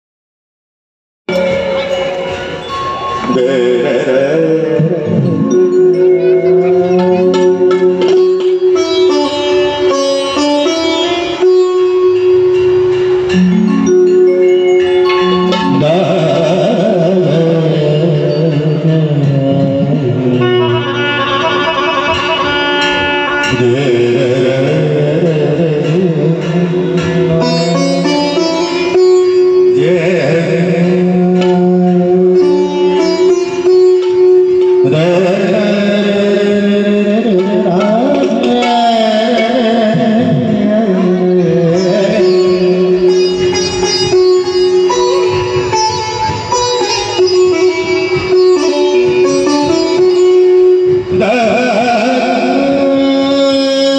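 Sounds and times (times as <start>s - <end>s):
double-reed pipe melody: 1.3s - 53.9s
hand-drum strokes: 18.9s - 53.4s.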